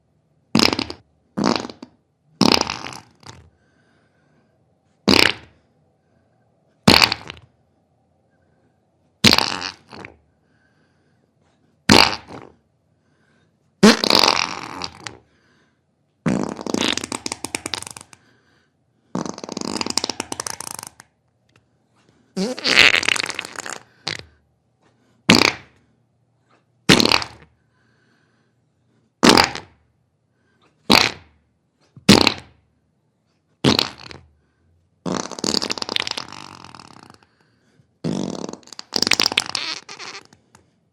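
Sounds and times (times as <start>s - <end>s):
fart sounds: 0.5s - 3.5s, 5.0s - 5.6s, 6.8s - 7.5s, 9.2s - 10.2s, 11.9s - 12.6s, 13.8s - 15.2s, 16.2s - 18.3s, 19.1s - 21.2s, 22.4s - 24.4s, 25.3s - 25.9s, 26.9s - 27.6s, 29.2s - 29.8s, 30.8s - 31.4s, 32.0s - 32.6s, 33.6s - 34.3s, 35.0s - 37.4s, 38.0s - 40.7s.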